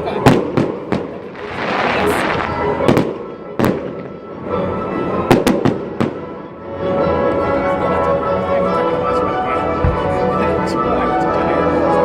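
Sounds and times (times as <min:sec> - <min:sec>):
music: 0:00.0 - 0:12.0
fireworks bursting: 0:00.2 - 0:04.3.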